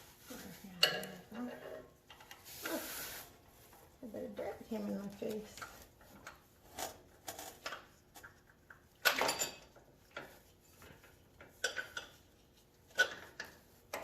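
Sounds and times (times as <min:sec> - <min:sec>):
metal tools clanking on metal: 0:09.0 - 0:09.7.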